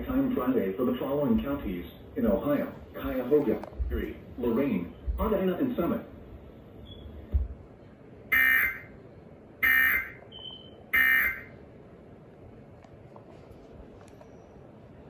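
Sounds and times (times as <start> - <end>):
digital data tone bursts: 8.3 - 8.9, 9.6 - 11.5.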